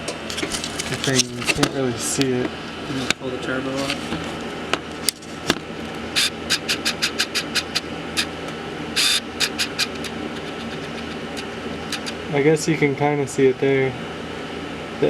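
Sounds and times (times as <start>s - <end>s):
steady low hum: 0.0s - 13.3s
metal parts clinking: 0.3s - 1.8s, 3.8s - 6.1s.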